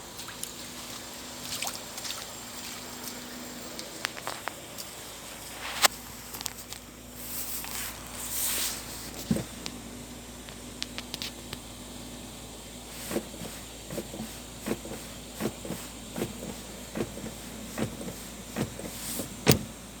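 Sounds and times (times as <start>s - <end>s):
car door lock knocking: 15.4s - 19.8s.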